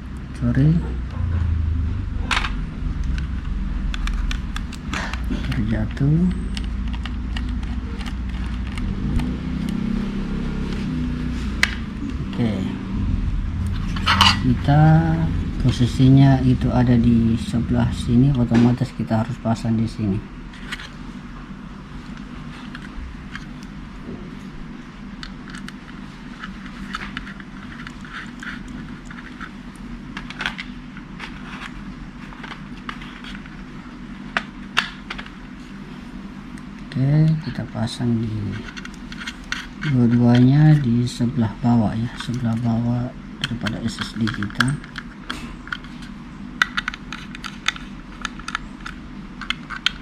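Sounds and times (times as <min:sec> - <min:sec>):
steady low hum: 0:00.0 - 0:50.0
small parts clicking and tapping: 0:38.5 - 0:40.9, 0:43.4 - 0:50.0.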